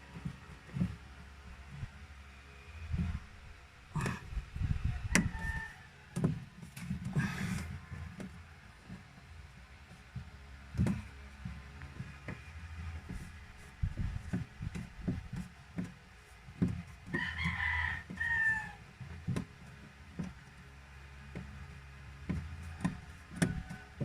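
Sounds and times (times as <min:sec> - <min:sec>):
rooster crowing: 0:04.8 - 0:06.4, 0:17.1 - 0:18.8, 0:22.6 - 0:24.0
light knocks and taps: 0:09.9 - 0:18.2, 0:19.0 - 0:20.4, 0:22.2 - 0:24.0.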